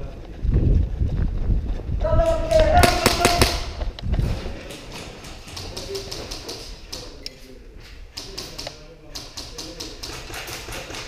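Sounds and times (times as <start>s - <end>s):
airsoft gunfire bursts: 2.6s - 3.8s.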